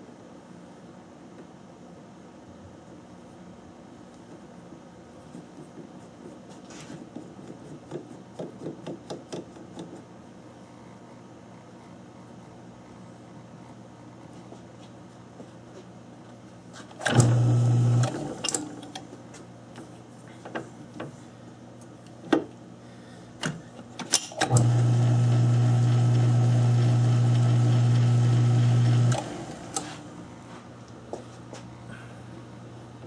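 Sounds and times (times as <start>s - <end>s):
lathe motor humming: 17.1s - 18.4s, 24.5s - 30.2s.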